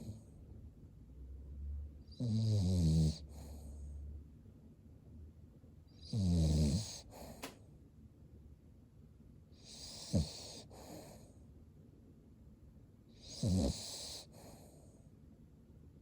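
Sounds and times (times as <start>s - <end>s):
dog snoring: 2.1s - 3.9s, 6.0s - 7.4s, 9.6s - 11.3s, 13.2s - 14.8s.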